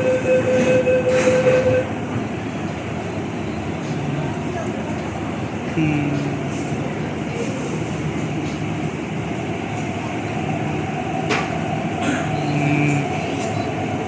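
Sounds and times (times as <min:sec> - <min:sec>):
electric train rumbling: 0:00.0 - 0:14.0.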